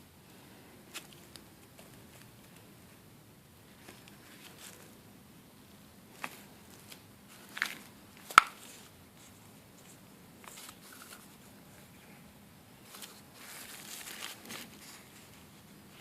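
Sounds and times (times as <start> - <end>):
packaging rustling: 12.8 - 15.5.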